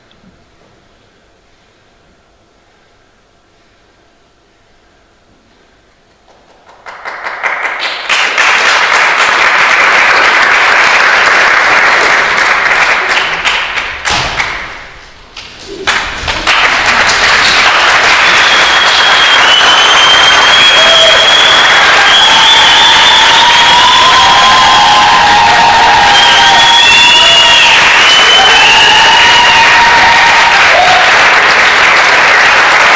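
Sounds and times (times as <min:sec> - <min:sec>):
audience applause: 0:06.5 - 0:14.9, 0:15.7 - 0:32.9.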